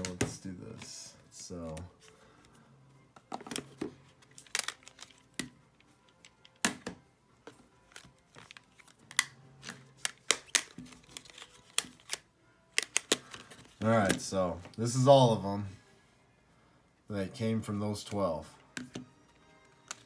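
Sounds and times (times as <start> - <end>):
cards clicking and crinkling: 0.0 - 2.5, 3.2 - 14.8, 19.8 - 20.0.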